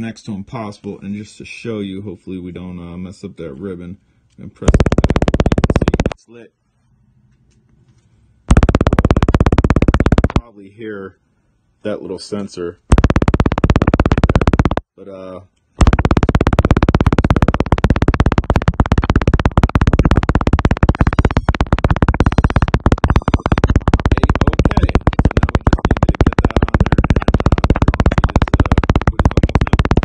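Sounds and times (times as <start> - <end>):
drone rapid clicking chatter: 4.7 - 6.2, 8.5 - 10.4, 12.9 - 14.8, 15.8 - 30.0.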